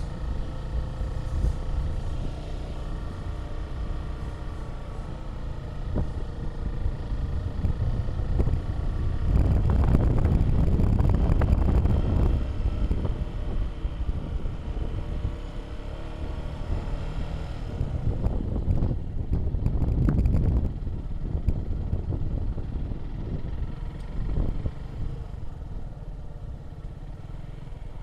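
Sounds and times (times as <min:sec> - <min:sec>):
moving vehicle rumble: 0:00.0 - 0:28.0
wind buffeting microphone: 0:00.9 - 0:15.5, 0:17.6 - 0:26.5.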